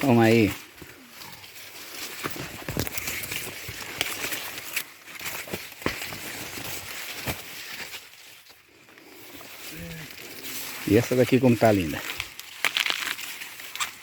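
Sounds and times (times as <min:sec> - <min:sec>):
dry corn leaves rustling: 0:00.0 - 0:14.0
corn ears snapping: 0:09.6 - 0:14.0.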